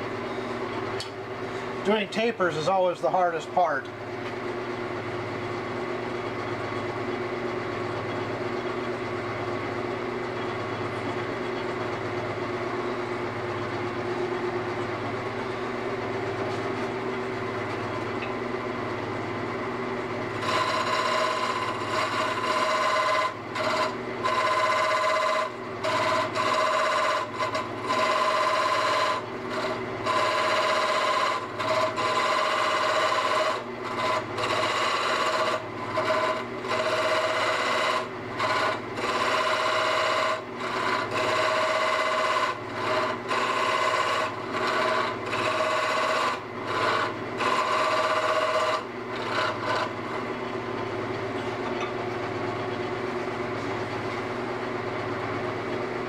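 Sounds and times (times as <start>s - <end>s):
wood lathe motor hum: 0.0s - 56.0s
turning tool scraping wood: 20.3s - 51.3s.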